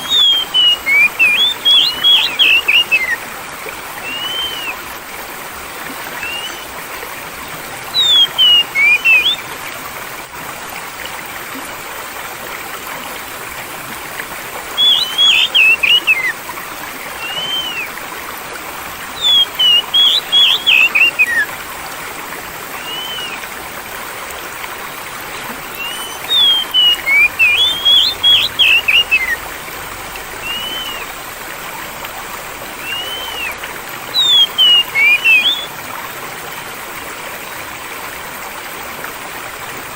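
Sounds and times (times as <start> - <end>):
bird whistled notes: 0.0 - 3.2, 4.0 - 4.8, 6.0 - 7.0, 7.9 - 9.5, 14.8 - 16.3, 17.2 - 17.9, 19.2 - 21.5, 22.8 - 23.4, 25.7 - 29.4, 30.4 - 31.1, 32.8 - 35.7
songbird chirping: 0.0 - 3.2, 5.8 - 9.5, 14.8 - 16.3, 19.2 - 21.4, 22.8 - 23.4, 25.3 - 29.4, 30.4 - 31.1, 34.2 - 35.7
running water: 0.0 - 39.9.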